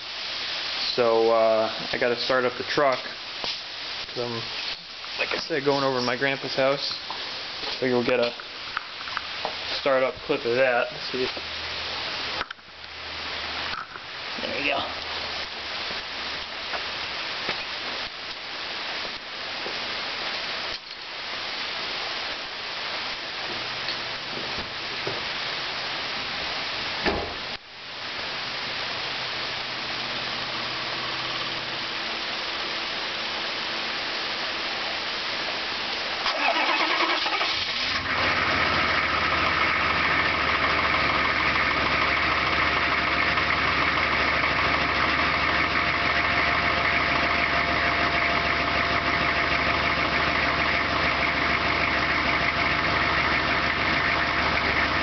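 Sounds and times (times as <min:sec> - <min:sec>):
rain: 0:00.0 - 0:55.0
diesel engine cranking and idling: 0:36.2 - 0:55.0.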